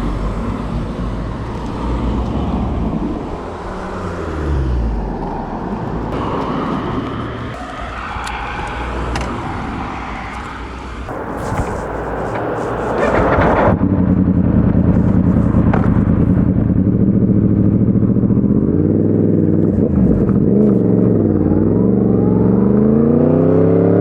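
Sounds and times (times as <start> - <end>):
motorcycle engine running: 11.1 - 22.4.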